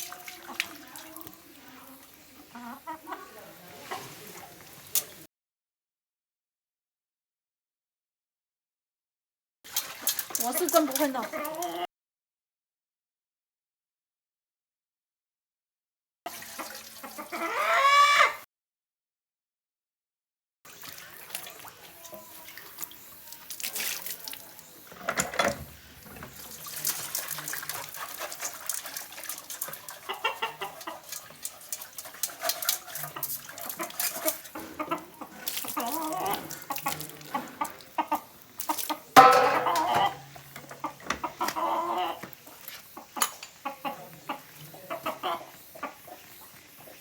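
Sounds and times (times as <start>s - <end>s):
water splashing: 0.0s - 2.3s, 9.7s - 11.8s, 20.7s - 24.8s, 26.0s - 41.7s
bowl scraping while washed: 0.0s - 5.2s, 20.8s - 43.6s
chickens clucking: 0.0s - 5.2s, 16.6s - 18.4s, 26.2s - 47.0s.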